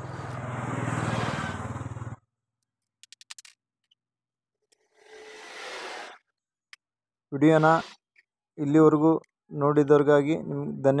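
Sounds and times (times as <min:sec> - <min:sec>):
small electric motor whirring: 0:01.0 - 0:01.6, 0:04.8 - 0:06.3, 0:07.4 - 0:08.1.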